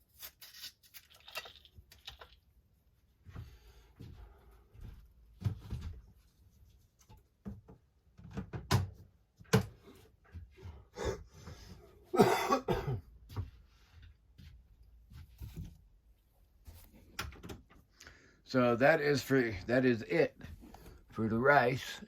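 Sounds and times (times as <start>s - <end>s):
person coughing: 12.1s - 13.1s.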